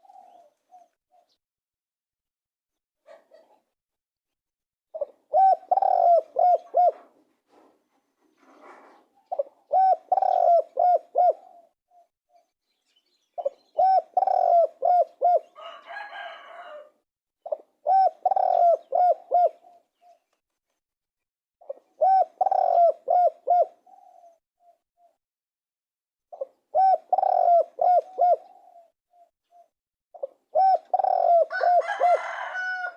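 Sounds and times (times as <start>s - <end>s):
dove cooing: 0.0s - 1.4s, 5.0s - 7.2s, 9.2s - 12.1s, 13.4s - 20.1s, 21.6s - 25.2s, 26.3s - 32.9s
scratchy noise: 7.5s - 9.1s.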